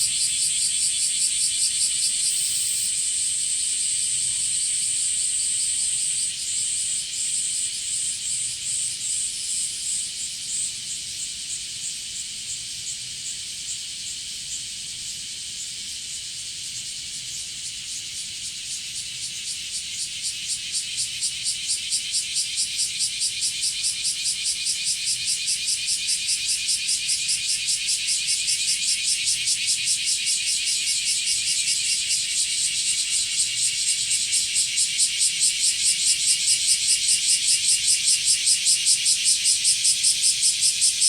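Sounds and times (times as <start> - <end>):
cicadas singing: 0.0 - 41.0.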